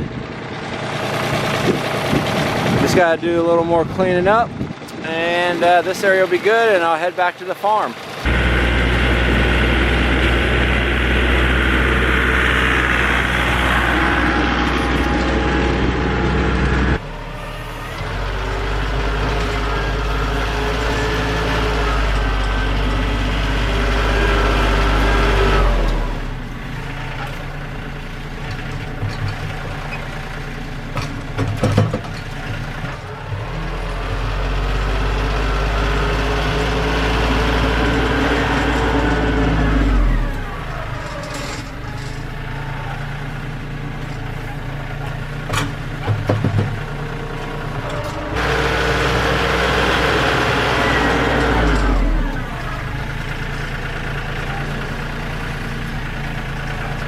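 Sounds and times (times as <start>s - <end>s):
tractor engine running: 0.0s - 57.0s
clatter of knocks: 31.0s - 32.7s, 45.5s - 47.0s.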